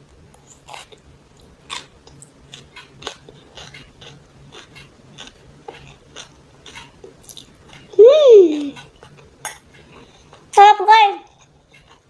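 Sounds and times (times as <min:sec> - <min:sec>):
person chewing noodles: 0:00.4 - 0:08.0, 0:11.2 - 0:12.0.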